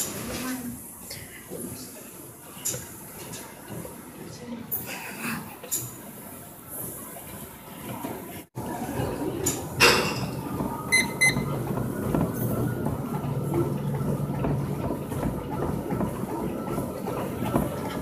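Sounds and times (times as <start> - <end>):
short electronic beeps: 10.9 - 11.5.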